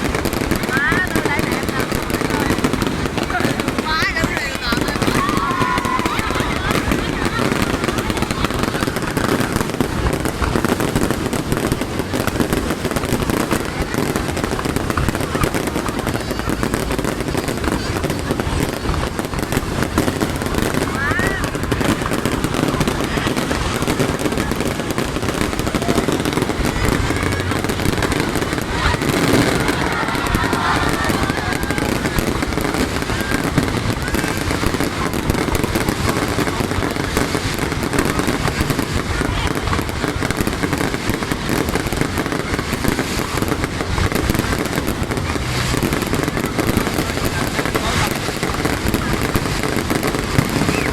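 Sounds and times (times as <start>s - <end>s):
fireworks crackling and popping: 0.0s - 50.9s
onlookers' voices: 0.0s - 50.9s.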